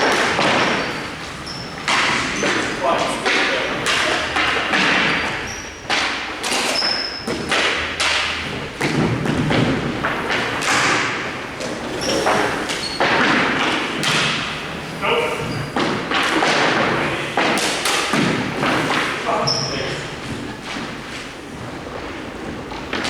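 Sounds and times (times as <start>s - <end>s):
short high squeaks: 12.0s - 13.0s.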